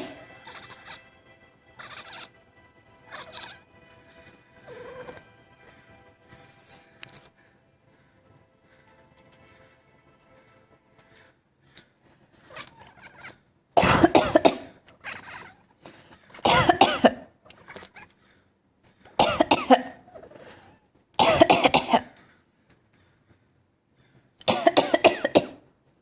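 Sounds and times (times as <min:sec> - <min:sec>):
cat coughing: 0:00.0 - 0:01.0, 0:01.8 - 0:02.3, 0:13.8 - 0:15.6, 0:16.3 - 0:17.3, 0:19.2 - 0:20.3, 0:21.2 - 0:22.2, 0:24.4 - 0:25.7.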